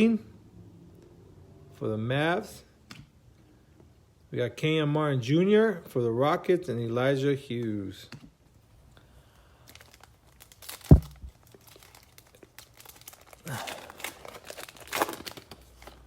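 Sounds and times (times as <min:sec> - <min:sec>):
foil wrapper crinkling and tearing: 0:09.6 - 0:16.0
thump: 0:10.9 - 0:11.3.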